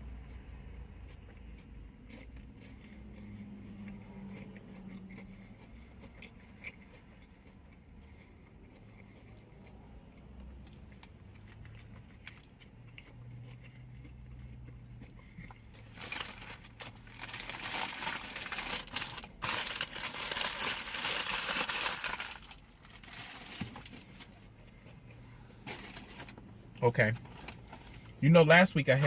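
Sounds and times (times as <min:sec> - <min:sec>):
paper wrapper crinkling: 0:15.8 - 0:24.3.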